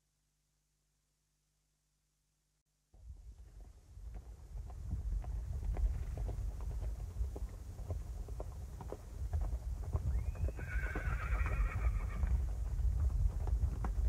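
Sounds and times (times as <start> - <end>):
horse hooves clip-clopping: 3.0 - 14.0
horse whinnying: 10.4 - 12.3.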